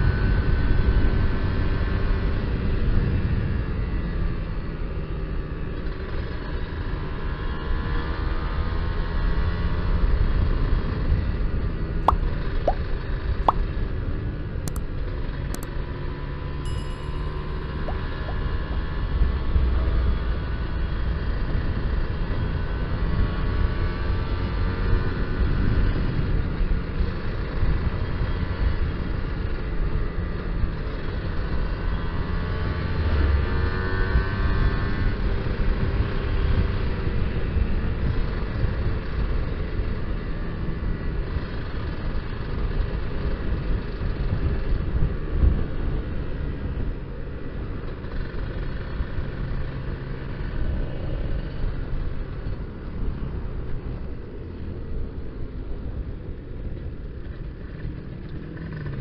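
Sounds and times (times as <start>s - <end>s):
wind rumble on microphone: 33.2s - 59.0s.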